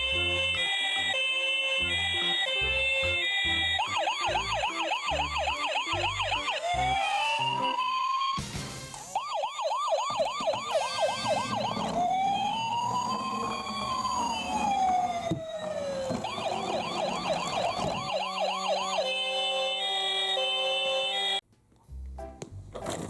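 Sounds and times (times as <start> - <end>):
emergency siren yelping and wailing: 0.0 - 8.4, 9.0 - 21.4
music: 0.0 - 9.2, 20.4 - 23.0.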